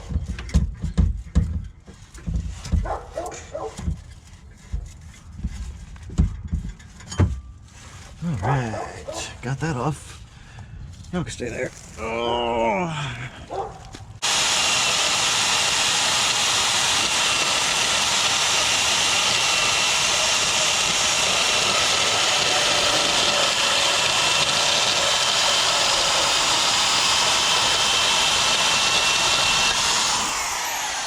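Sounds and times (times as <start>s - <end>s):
electric grinder grinding metal: 14.2s - 31.0s.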